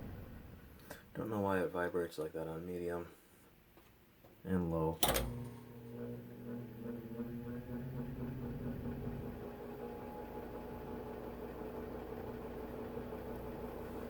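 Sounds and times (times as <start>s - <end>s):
box fan motor humming: 5.1s - 14.0s.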